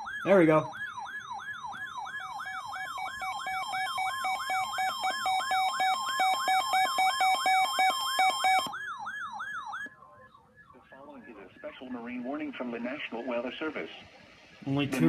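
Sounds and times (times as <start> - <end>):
falling siren sweep: 0.0 - 14.6
fast pulsing beeps: 2.2 - 8.7.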